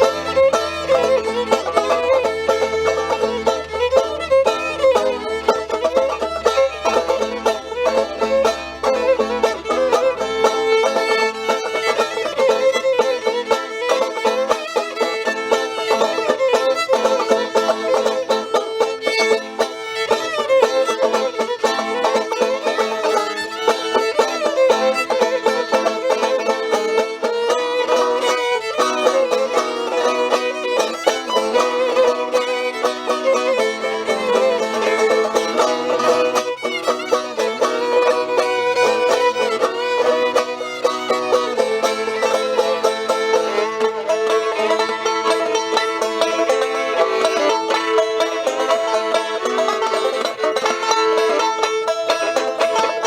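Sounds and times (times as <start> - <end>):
bowed fiddle melody: 0.0 - 53.0
plucked banjo strings: 0.0 - 53.0.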